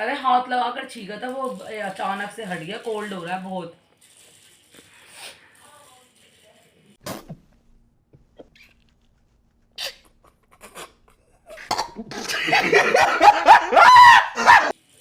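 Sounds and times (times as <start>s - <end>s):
short sharp puff: 7.0s - 7.6s.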